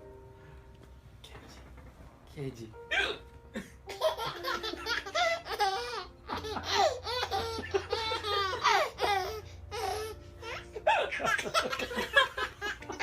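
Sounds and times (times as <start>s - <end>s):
baby laughing and squealing: 4.0s - 11.8s.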